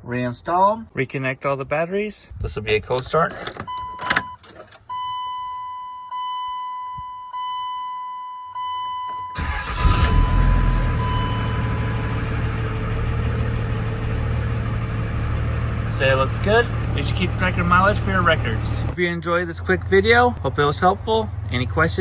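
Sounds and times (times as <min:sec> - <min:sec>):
diesel engine cranking and starting: 0:09.4 - 0:19.0
diesel engine idling: 0:09.4 - 0:22.0.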